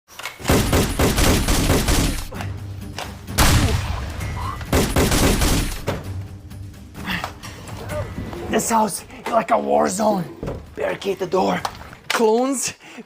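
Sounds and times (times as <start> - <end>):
machine-gun bursts: 0.4 - 2.3, 4.7 - 5.8.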